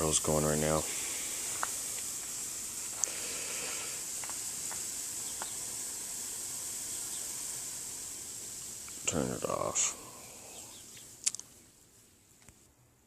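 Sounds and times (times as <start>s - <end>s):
water hissing from hose: 0.0s - 12.1s
faint ticks: 4.2s - 5.6s, 10.9s - 11.6s.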